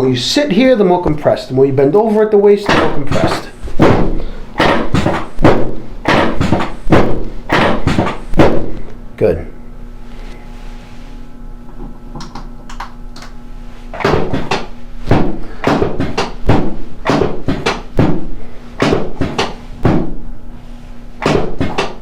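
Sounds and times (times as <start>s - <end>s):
sharp thuds and knocks: 2.7s - 8.8s, 14.0s - 20.2s, 21.2s - 22.0s.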